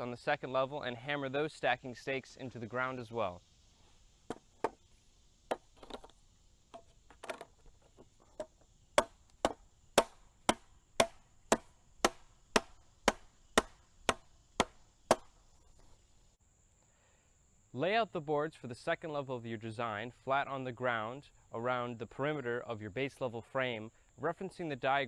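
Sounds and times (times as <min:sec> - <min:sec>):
hammer driving stakes into ground: 0:04.2 - 0:04.8, 0:05.5 - 0:15.4.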